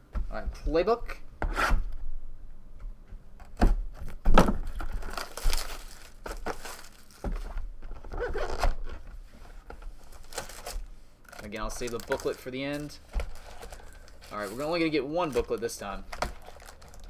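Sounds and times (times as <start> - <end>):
plastic wrapping crinkling and tearing: 4.4 - 9.0, 10.0 - 17.0.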